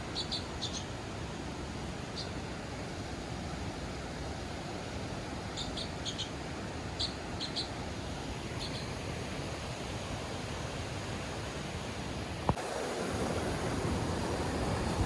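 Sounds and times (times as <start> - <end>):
small bird chirping: 0.1 - 0.9, 2.2 - 2.4, 5.6 - 6.4, 7.0 - 7.8, 8.6 - 8.9.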